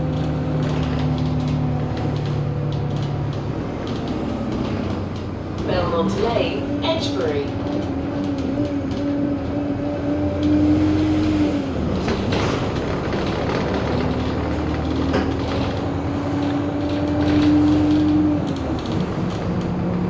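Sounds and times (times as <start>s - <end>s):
bus engine hum: 0.0s - 20.0s.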